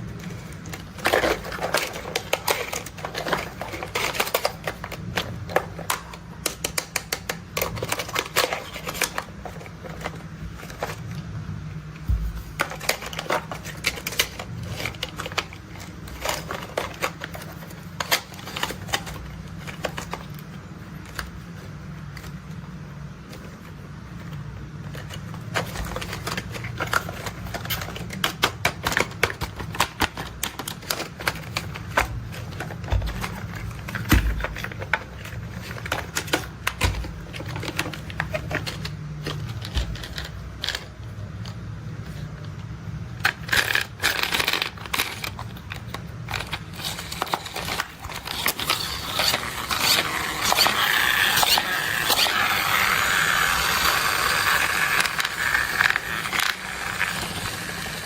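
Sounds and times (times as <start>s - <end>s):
plastic toys clicking and tapping: 0.3s - 11.0s, 24.9s - 42.2s, 43.2s - 58.0s
toy wheels rolling rattle: 43.2s - 58.0s.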